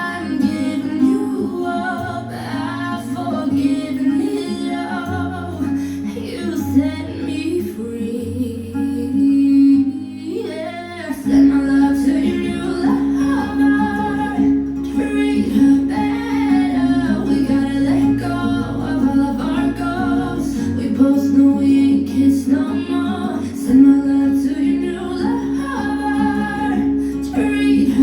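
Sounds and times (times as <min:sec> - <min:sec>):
acoustic guitar: 0:00.0 - 0:28.0
woman singing: 0:00.0 - 0:28.0.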